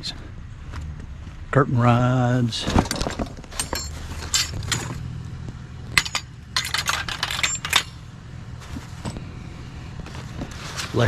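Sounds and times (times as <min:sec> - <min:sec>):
metal rods clattering: 0:02.6 - 0:05.2, 0:05.8 - 0:09.3, 0:10.0 - 0:11.0.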